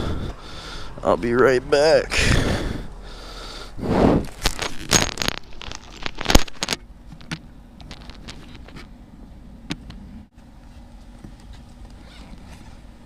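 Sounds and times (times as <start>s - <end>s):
handling rustle and scrape: 4.2s - 9.0s, 10.5s - 13.0s.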